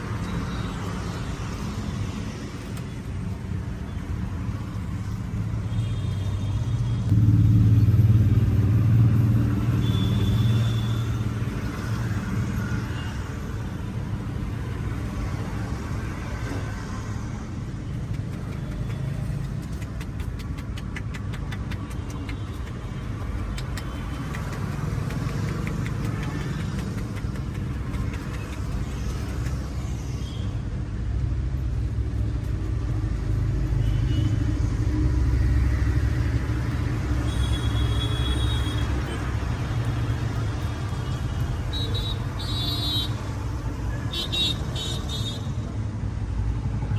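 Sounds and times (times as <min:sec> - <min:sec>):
street traffic rumbling: 0:00.0 - 0:46.9
vehicle passing by: 0:07.0 - 0:41.7.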